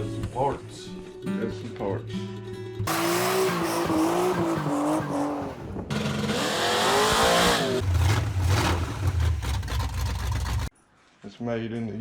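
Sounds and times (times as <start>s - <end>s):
car tyres squealing: 2.9s - 10.7s
deep engine rumble: 4.1s - 10.7s.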